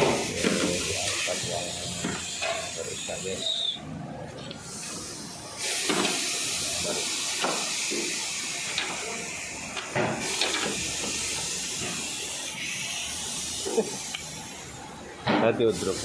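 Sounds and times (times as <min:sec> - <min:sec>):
steady hiss: 0:04.6 - 0:14.9.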